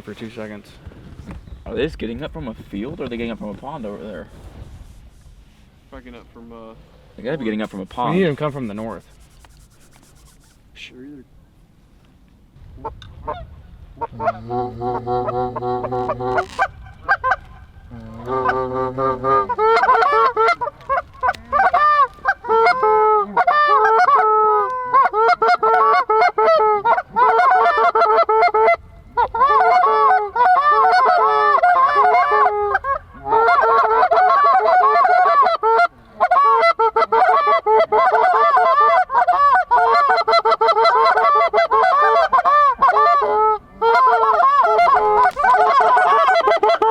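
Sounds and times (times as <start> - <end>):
geese honking: 14.0 - 28.7, 29.4 - 46.9.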